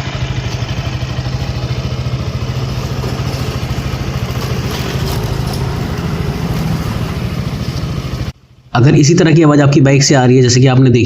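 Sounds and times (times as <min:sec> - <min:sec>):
motorcycle engine running: 0:00.0 - 0:08.7
timing chain rattle: 0:02.7 - 0:06.6.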